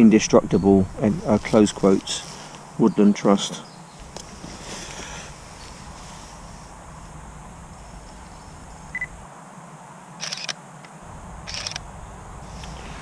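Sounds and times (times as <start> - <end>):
camera beep: 8.9 - 9.2, 11.5 - 11.8
camera shutter clacking: 10.2 - 10.6, 11.5 - 11.8.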